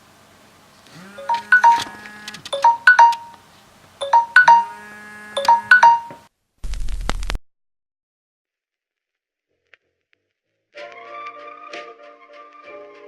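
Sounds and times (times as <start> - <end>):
chiming phone ringtone: 1.2 - 2.0, 2.6 - 3.4, 4.0 - 6.3.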